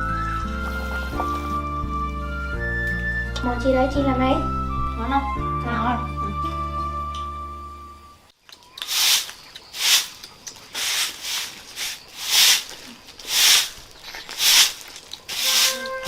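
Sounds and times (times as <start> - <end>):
background music: 0.0 - 8.2, 15.4 - 16.0
hissing swishes: 8.9 - 16.0.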